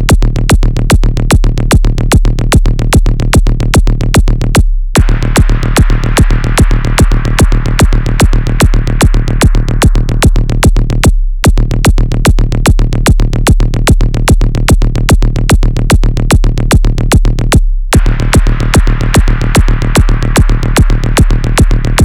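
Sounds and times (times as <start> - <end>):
deep bass: 0.0 - 22.0
electronic dance music beat: 5.0 - 12.0, 15.8 - 22.0.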